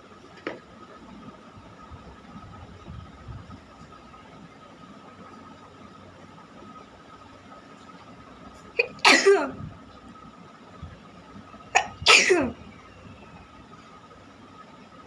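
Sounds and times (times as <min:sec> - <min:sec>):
person sneezing loudly: 0:08.8 - 0:09.6, 0:11.8 - 0:12.5.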